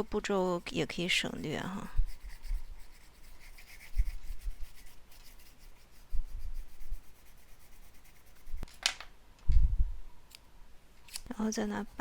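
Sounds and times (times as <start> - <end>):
oil pastel rubbing on paper: 0.0 - 8.7.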